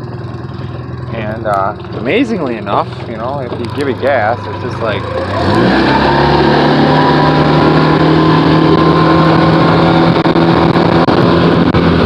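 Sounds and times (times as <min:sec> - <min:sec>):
outboard motor at high revs: 0:00.0 - 0:12.0.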